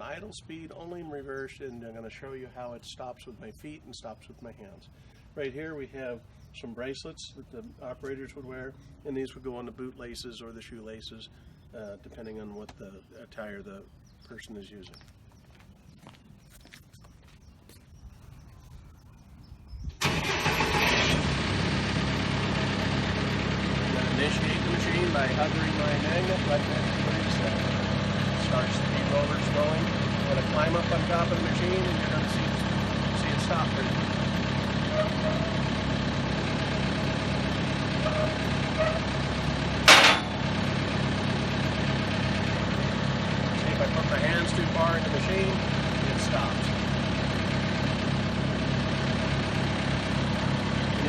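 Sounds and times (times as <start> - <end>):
wood chipper engine starting: 20.0 - 51.0
loud short burst of noise: 39.9 - 40.6.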